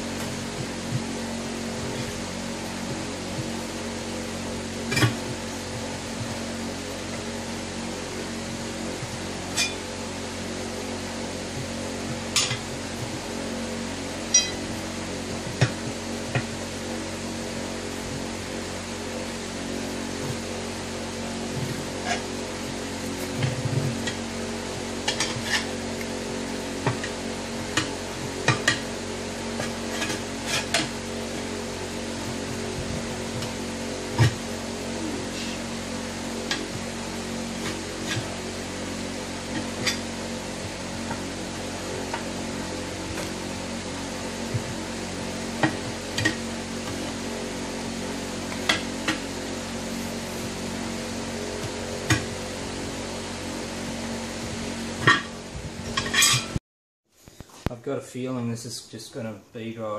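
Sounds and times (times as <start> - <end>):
low hum: 0.0 - 56.6
tools clinking on metal rim: 14.3 - 14.6.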